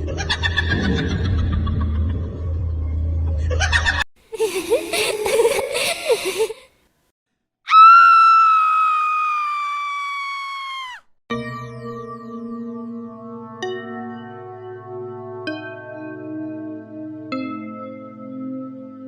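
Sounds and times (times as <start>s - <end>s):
long high scream: 7.7s - 11.1s.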